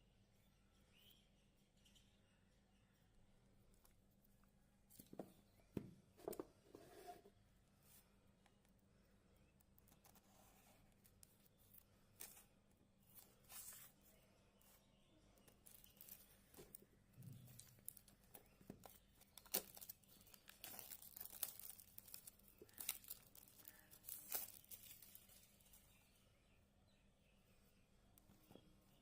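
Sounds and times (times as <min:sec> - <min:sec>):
packaging rustling and crinkling: 0:15.5 - 0:16.8, 0:17.4 - 0:26.0.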